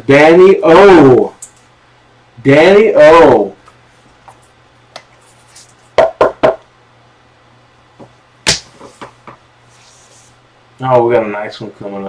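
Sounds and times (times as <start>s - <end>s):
cards knocking on a table: 6.0s - 6.6s.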